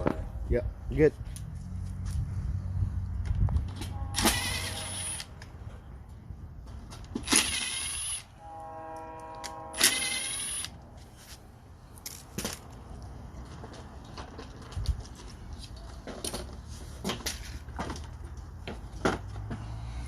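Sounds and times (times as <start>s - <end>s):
steady multi-pitch tone: 8.2s - 10.8s.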